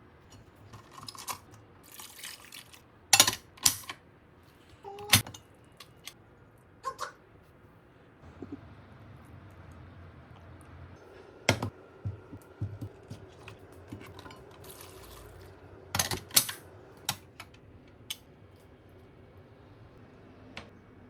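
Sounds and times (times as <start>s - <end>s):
utensils clinking against pots: 12.6s - 15.2s, 16.0s - 17.5s.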